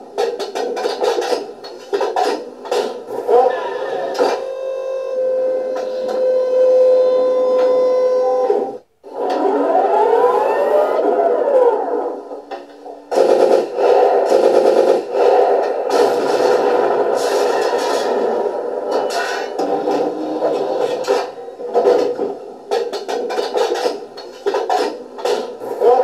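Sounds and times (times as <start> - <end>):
machine motor whine: 5.0 - 12.4.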